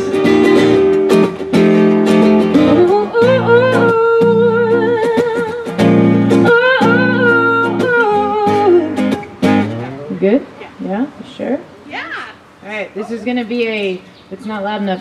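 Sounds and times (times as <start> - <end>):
guitar strummed in chords: 0.0 - 10.6
woman singing: 2.6 - 9.2.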